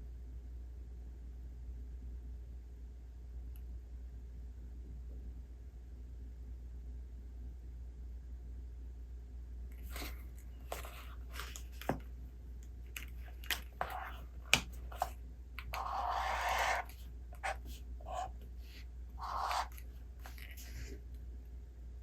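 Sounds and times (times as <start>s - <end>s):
steady low hum: 0.0s - 22.0s
book pages turning: 9.8s - 12.1s, 12.9s - 18.4s, 19.2s - 21.0s
book handling taps and clicks: 9.9s - 12.1s, 12.9s - 15.8s.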